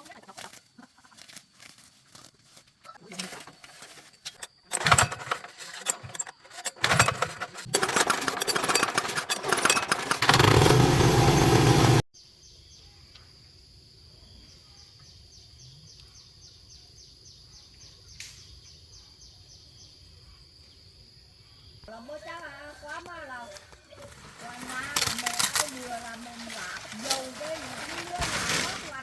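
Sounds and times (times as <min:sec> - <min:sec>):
diesel engine cranking and running: 0:04.3 - 0:12.0.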